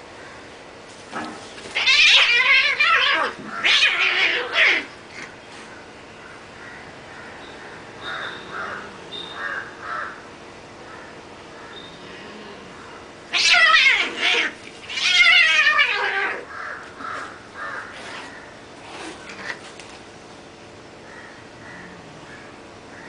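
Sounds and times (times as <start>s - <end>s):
cats yowling in a fight: 1.1s - 5.7s, 11.9s - 19.6s.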